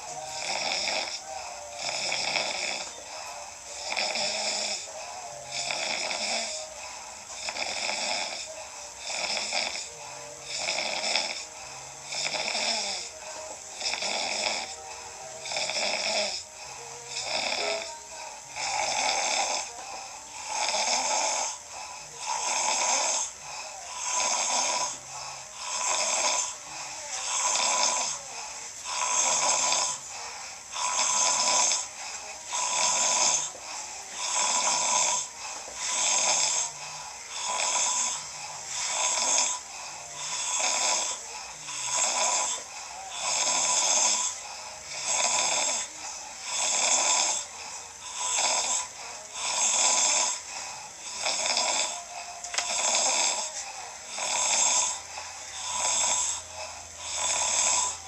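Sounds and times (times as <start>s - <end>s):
man snoring harshly: 0.0s - 58.0s.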